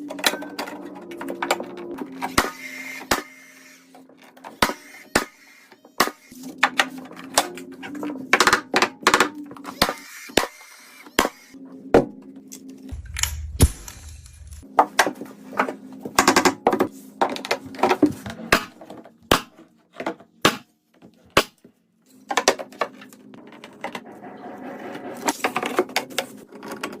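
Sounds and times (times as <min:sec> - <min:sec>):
low steady hum: 0:11.7 - 0:14.6.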